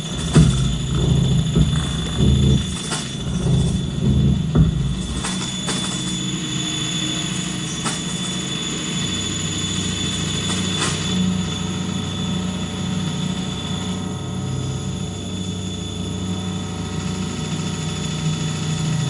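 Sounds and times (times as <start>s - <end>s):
low rumbling hum: 0.0s - 7.8s.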